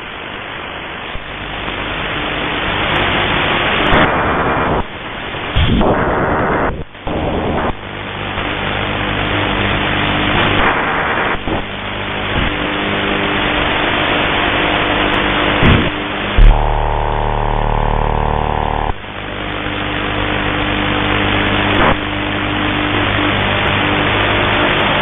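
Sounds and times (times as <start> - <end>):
radio static hiss: 0.0 - 25.0
loud buzzing signal: 2.1 - 25.0.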